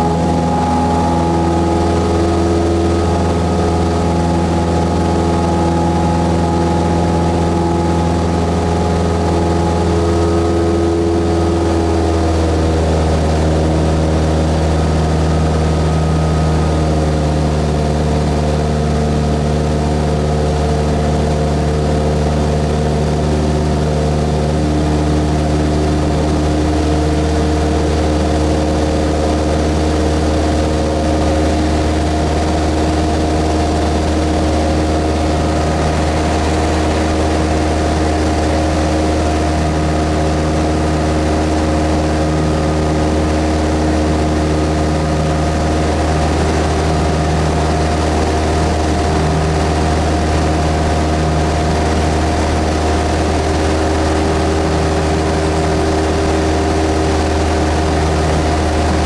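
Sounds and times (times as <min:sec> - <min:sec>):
airplane engine and propeller drone: 0:00.0 - 0:59.0.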